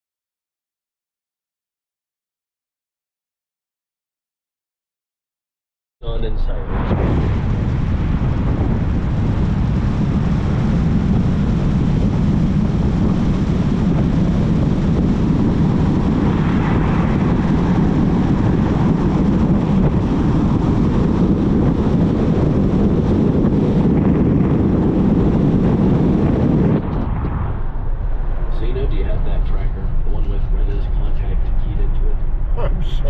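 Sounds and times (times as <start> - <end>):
vehicle road and engine rumble: 25.6 - 33.0.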